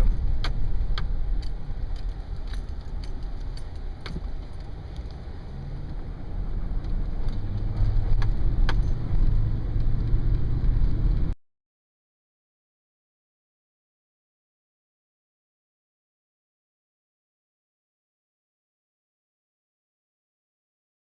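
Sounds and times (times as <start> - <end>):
light rattles and clicks: 0.0 - 11.4
vehicle engine and road rumble: 0.0 - 11.4.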